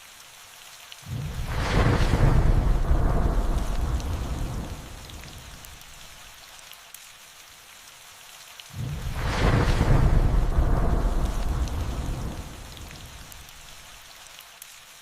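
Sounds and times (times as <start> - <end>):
steady rain: 0.0 - 15.0
rolling thunder: 1.1 - 6.1, 8.8 - 13.7.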